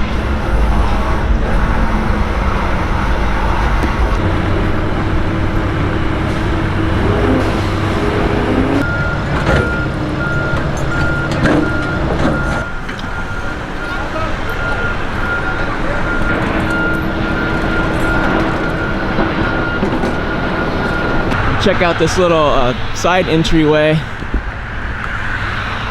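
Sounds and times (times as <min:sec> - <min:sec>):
reversing alarm beeping: 0:00.0 - 0:23.3
heavy vehicle engine running: 0:00.0 - 0:25.9
street traffic: 0:00.0 - 0:25.9.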